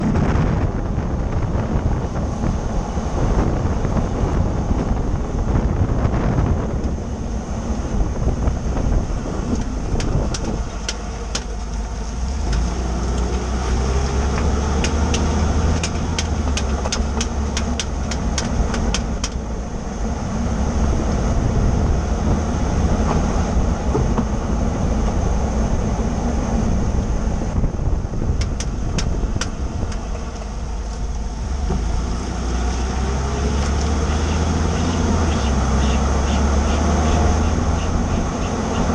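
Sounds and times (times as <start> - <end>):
truck engine running: 0.0 - 38.9
sharp clicking under truck: 8.4 - 19.7, 28.0 - 38.9.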